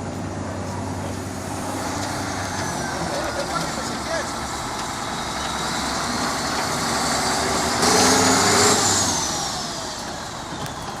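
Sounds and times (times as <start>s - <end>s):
diesel engine revving with whine: 0.4s - 11.0s.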